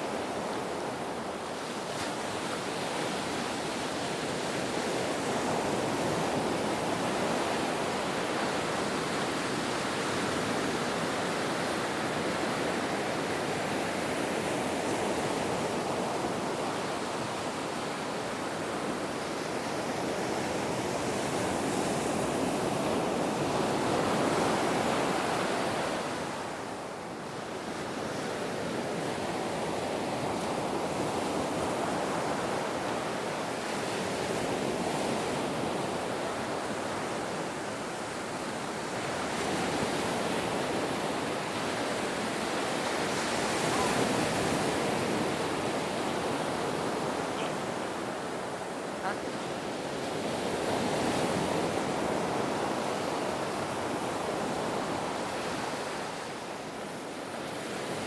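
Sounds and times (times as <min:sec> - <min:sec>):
waves breaking: 0:39.2 - 0:56.2.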